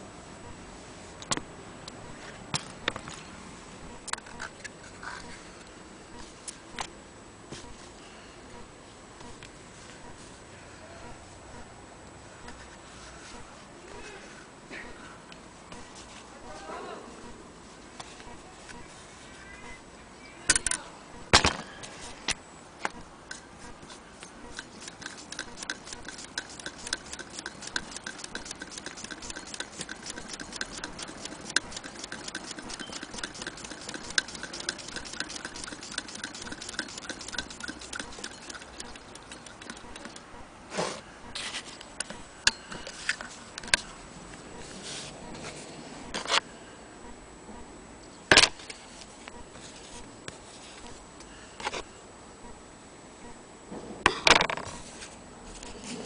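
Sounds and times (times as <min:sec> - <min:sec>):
sewing machine ticking: 0:24.5 - 0:40.3.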